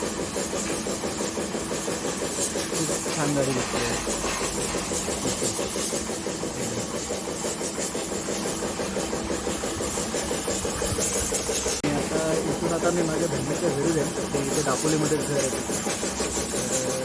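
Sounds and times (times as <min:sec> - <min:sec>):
motor running with fast pulse: 0:00.0 - 0:17.0.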